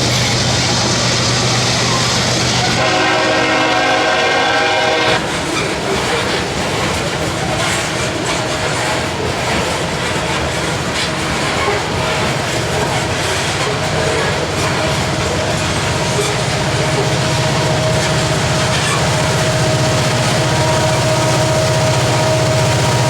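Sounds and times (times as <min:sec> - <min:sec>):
locomotive engine humming: 0:00.0 - 0:23.0
train wheels clattering on rails: 0:00.0 - 0:23.0
train air horn blast: 0:02.6 - 0:06.2, 0:11.6 - 0:23.0.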